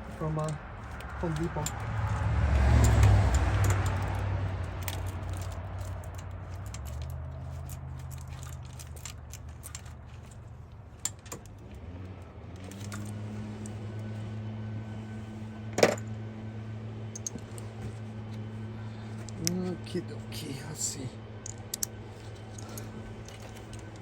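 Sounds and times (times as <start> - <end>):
low steady hum: 0.0 - 24.0
ratchet metallic clicks: 0.4 - 10.4, 17.2 - 17.6, 21.4 - 24.0.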